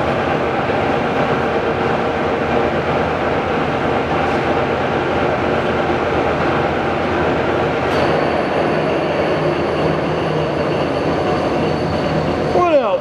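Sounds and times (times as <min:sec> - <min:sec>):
lathe gearhead running: 0:00.0 - 0:13.0
thin high whine: 0:04.2 - 0:13.0.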